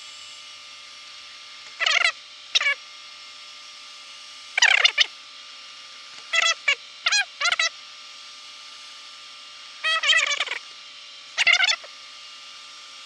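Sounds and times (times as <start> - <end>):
warbling squawk-like bursts: 1.8 - 2.8, 4.6 - 5.1, 6.3 - 7.8, 9.8 - 10.6, 11.4 - 11.9
surface grinder humming: 9.6 - 12.1.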